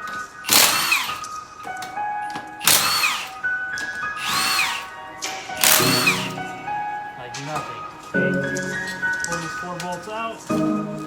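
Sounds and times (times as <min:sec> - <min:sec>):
music: 0:00.0 - 0:11.0
impact wrench whirring: 0:00.4 - 0:01.2, 0:02.6 - 0:03.4, 0:04.2 - 0:04.9, 0:05.6 - 0:06.5.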